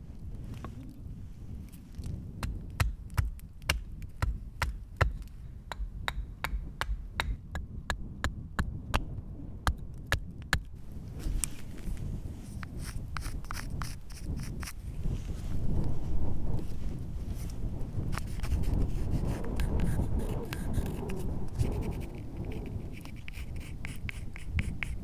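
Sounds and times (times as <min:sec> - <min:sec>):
blade cutting into wood: 0:12.5 - 0:14.8, 0:18.1 - 0:25.0.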